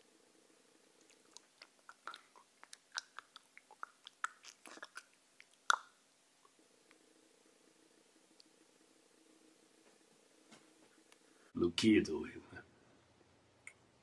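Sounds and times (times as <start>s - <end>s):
lips smacking and sucking: 1.0s - 6.6s.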